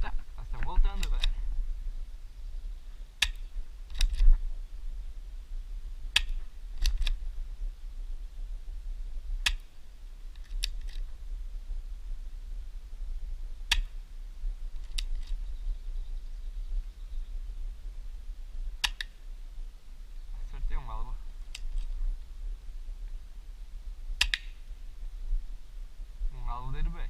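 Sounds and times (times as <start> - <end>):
wind rumble on microphone: 0.0 - 27.0
pistol slide racking clicks: 3.2 - 4.3, 6.2 - 7.2, 10.3 - 11.0.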